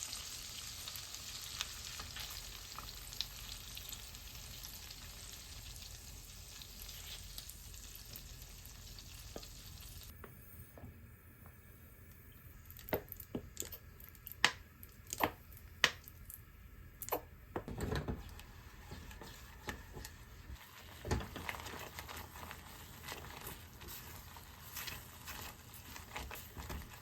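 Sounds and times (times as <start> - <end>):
food squishing and rustling: 1.6 - 10.1, 18.3 - 27.0.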